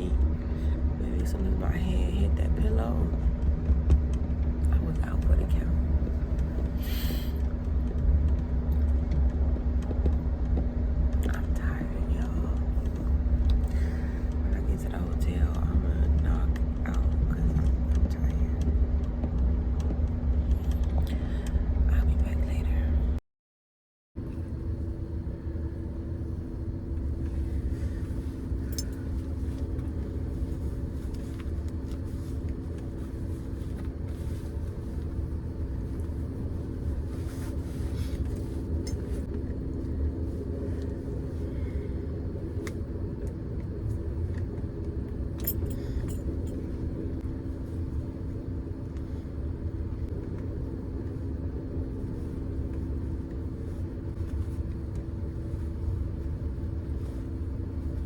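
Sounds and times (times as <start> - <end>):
train rumbling: 0.0 - 23.2.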